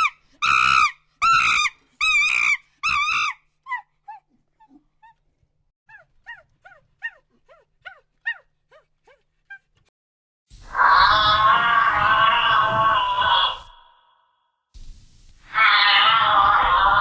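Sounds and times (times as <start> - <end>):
loud animal call: 10.7 - 14.1, 15.5 - 17.0
animal whining cries: 10.8 - 13.7, 15.5 - 17.0.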